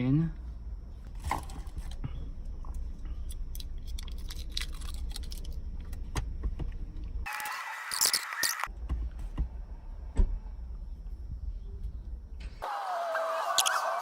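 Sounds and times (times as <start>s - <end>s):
steady low rumble: 8.7s - 12.5s.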